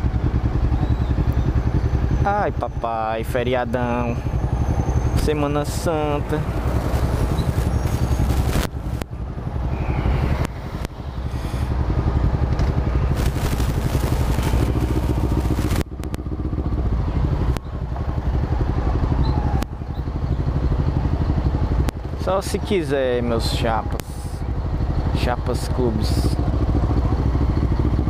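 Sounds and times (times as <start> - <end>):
motorcycle engine running: 0.0 - 28.0
rushing air: 6.4 - 9.0, 9.6 - 11.8, 13.1 - 15.9.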